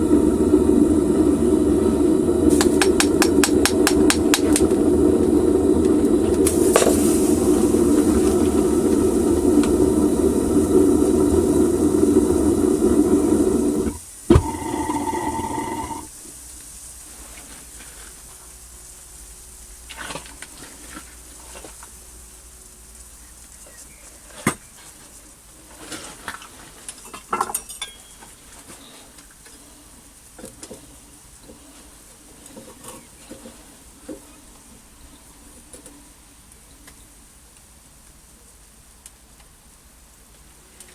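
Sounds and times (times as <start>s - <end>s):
faint sizzle: 0.0s - 40.9s
metal tools clinking: 27.0s - 28.3s.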